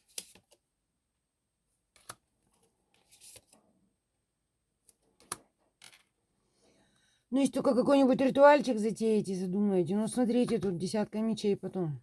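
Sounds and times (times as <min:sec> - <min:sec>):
cards rustling: 0:03.0 - 0:03.6.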